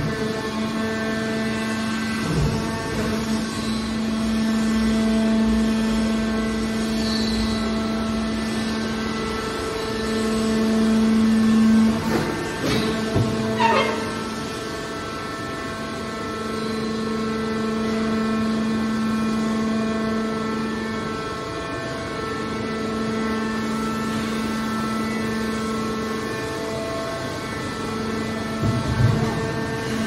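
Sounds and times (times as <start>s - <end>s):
baler machine drone: 0.0s - 30.0s
metallic screech: 3.3s - 4.4s, 6.8s - 8.0s, 13.4s - 14.5s.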